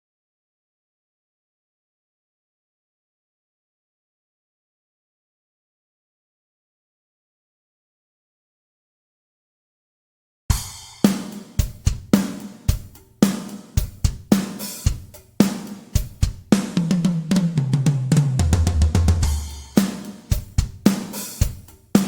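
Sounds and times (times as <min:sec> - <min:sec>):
drum kit groove: 0:10.5 - 0:22.0
tom fill descending: 0:16.8 - 0:20.4.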